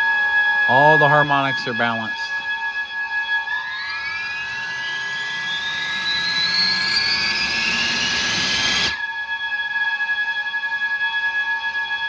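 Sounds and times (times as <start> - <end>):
electric ducted fans whining: 3.6 - 9.0.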